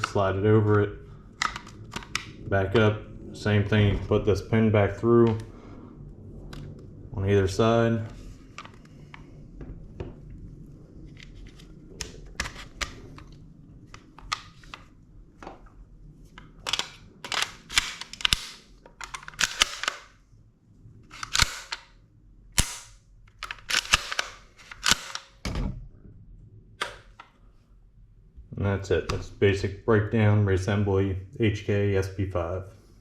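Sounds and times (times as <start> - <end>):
pistol metallic clicks: 16.7 - 20.1, 22.6 - 25.4.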